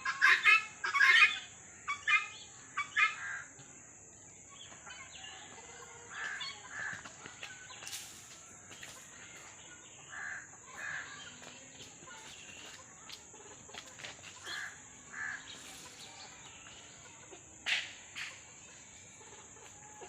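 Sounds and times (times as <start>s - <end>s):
bird calls: 4.4s - 20.0s.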